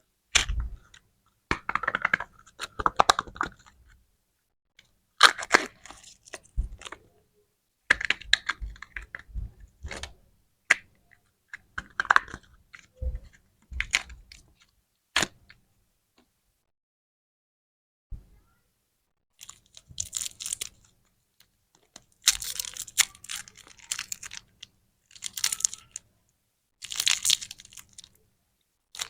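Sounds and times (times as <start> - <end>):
plastic wrappers crinkling: 19.4 - 20.9, 22.0 - 26.0, 26.8 - 28.2.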